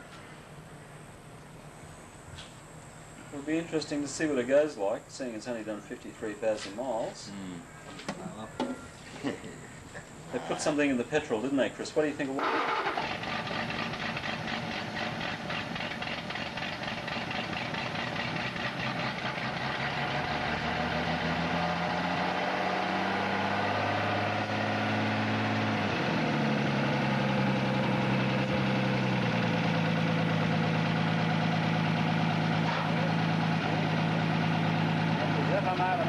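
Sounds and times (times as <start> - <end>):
loud car engine idling: 12.4 - 22.3, 25.2 - 36.0.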